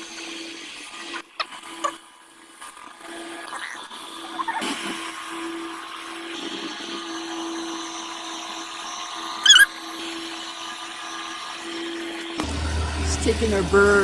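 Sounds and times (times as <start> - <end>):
small motor whining: 0.0 - 12.8
high squeak: 9.4 - 9.8.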